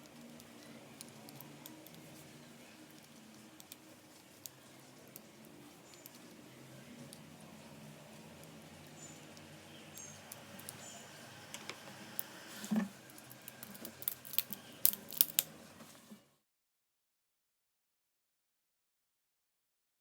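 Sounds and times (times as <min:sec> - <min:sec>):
small hard parts clicking: 0:13.1 - 0:15.5.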